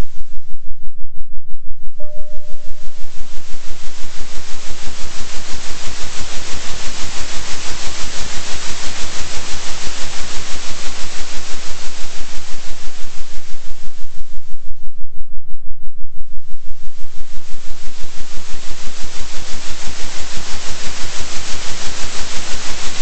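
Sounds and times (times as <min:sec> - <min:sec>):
pulsing synthetic hiss: 0:02.5 - 0:14.5, 0:16.8 - 0:23.0.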